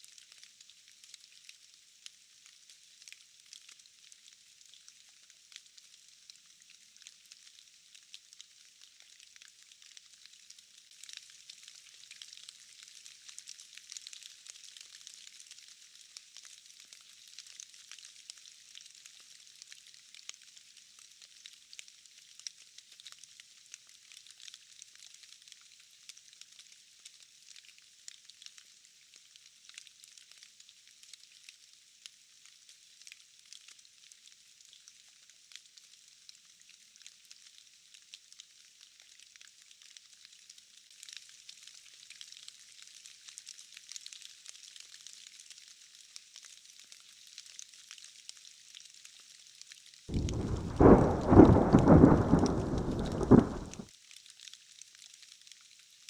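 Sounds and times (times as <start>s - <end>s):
light rain falling: 46.7s - 55.2s.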